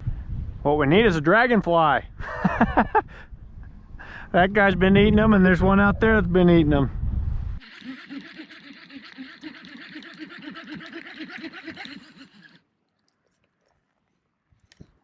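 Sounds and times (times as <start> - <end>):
fishing reel whirring: 7.6 - 12.6.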